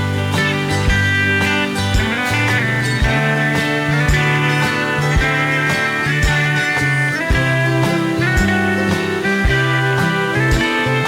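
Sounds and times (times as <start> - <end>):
guitar instrumental music: 0.0 - 11.0.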